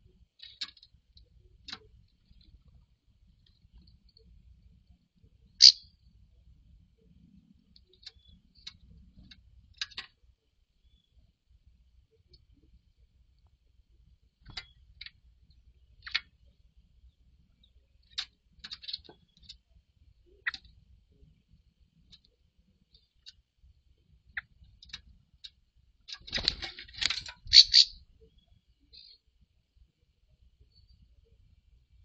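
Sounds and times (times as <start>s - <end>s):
bird calling: 5.6s - 5.8s, 27.4s - 29.2s.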